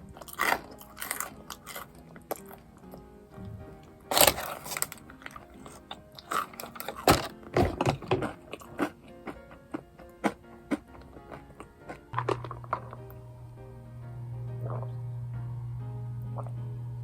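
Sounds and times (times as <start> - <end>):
crunchy chewing of crisp food: 0.0 - 3.2, 4.0 - 13.2
quiet background music: 0.0 - 17.0.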